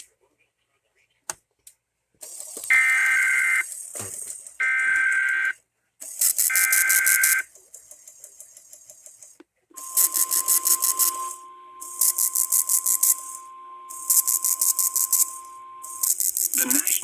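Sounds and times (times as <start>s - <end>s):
buzzing digital data tones: 2.7s - 3.7s, 6.2s - 7.5s, 9.8s - 17.0s
rapid high-pitched pulsing beeps: 2.7s - 3.8s, 6.2s - 7.5s, 9.8s - 17.0s
faint static: 9.8s - 17.0s
steady alert tone: 9.8s - 17.0s.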